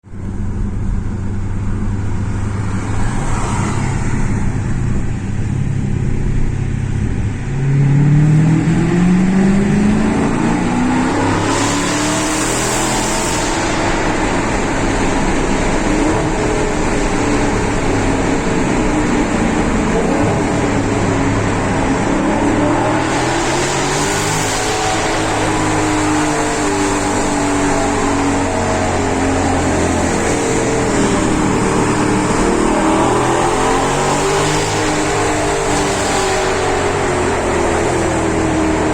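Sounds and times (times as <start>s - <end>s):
car engine revving: 0.2s - 38.9s.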